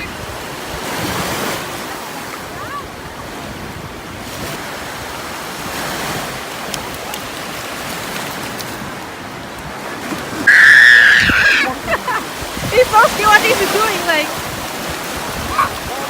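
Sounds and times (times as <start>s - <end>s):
sea waves breaking on beach: 0.0s - 16.0s
wind buffeting microphone: 0.0s - 16.0s.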